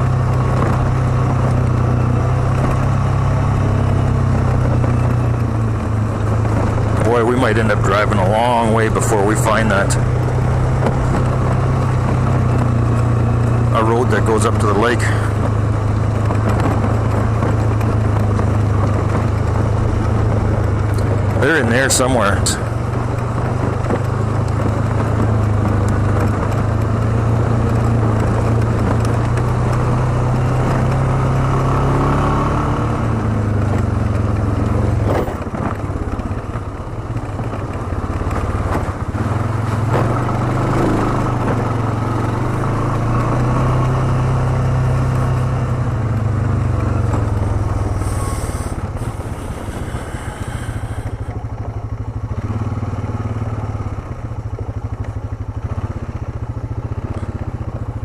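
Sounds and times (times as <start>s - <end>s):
atv engine running: 0.0s - 58.0s
knocks from rough ground: 34.9s - 43.4s.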